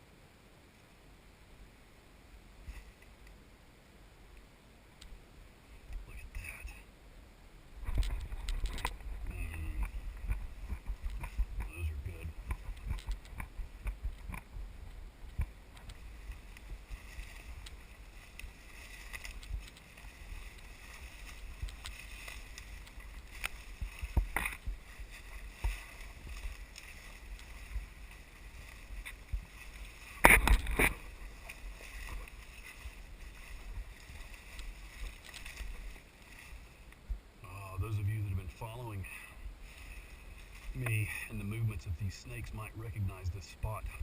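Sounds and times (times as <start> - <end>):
twigs snapping: 7.8 - 11.7, 12.4 - 37.1
footsteps rustling through leaf litter: 16.0 - 30.2, 30.9 - 36.9.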